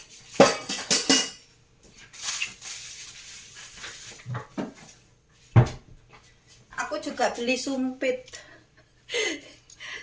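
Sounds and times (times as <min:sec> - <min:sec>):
kitchenware knocking and clinking: 0:00.3 - 0:01.5.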